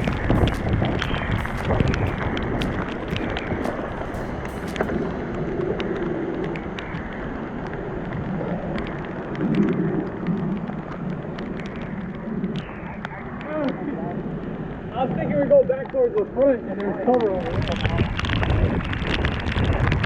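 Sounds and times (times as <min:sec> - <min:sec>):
rain falling: 0:00.0 - 0:06.0
sharp ticks of raindrops: 0:00.0 - 0:12.7, 0:15.6 - 0:20.0.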